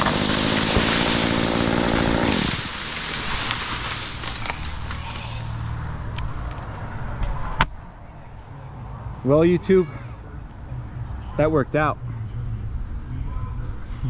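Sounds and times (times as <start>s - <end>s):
chainsaw cutting and idling: 0.0s - 5.3s
branches crashing down: 0.0s - 5.6s.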